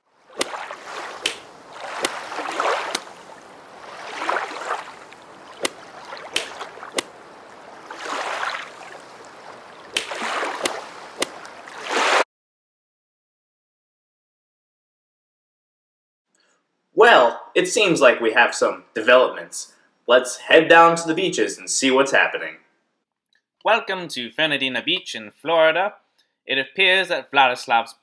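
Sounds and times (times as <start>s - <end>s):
water sloshing and splashing: 0.1s - 12.2s
sharp clicks: 5.6s - 7.2s.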